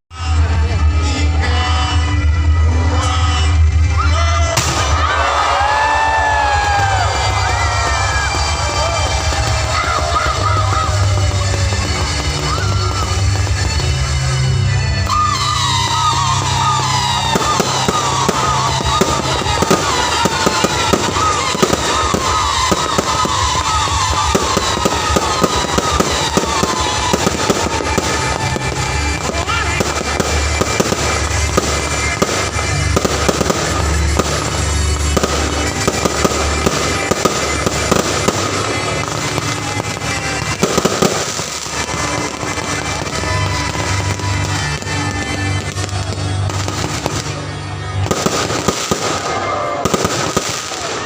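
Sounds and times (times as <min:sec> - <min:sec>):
fireworks bangs and crackling: 0:00.1 - 0:51.0
fireworks whistling downward: 0:03.9 - 0:51.0.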